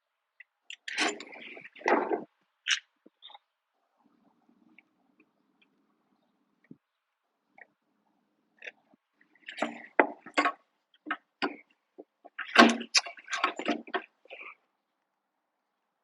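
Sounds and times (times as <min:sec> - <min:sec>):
wood and tools clattering: 0:00.8 - 0:02.3, 0:12.2 - 0:14.2.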